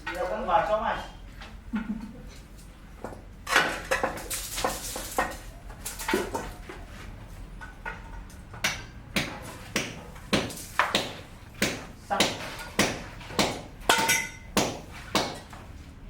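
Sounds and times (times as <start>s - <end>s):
hard objects knocking and clinking: 12.3s - 14.6s.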